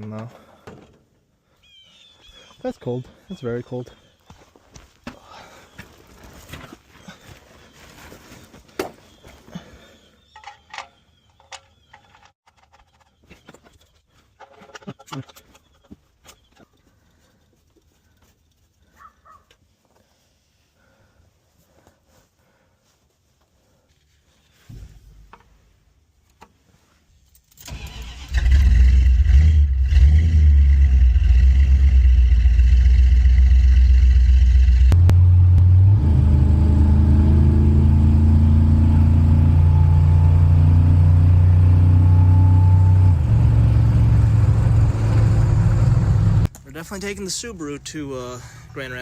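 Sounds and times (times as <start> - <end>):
car engine starting and idling: 27.5 - 46.5.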